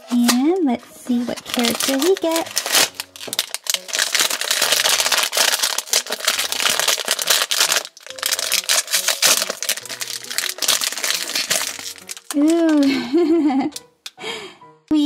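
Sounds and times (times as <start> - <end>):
cardboard packaging tearing: 1.1 - 12.9.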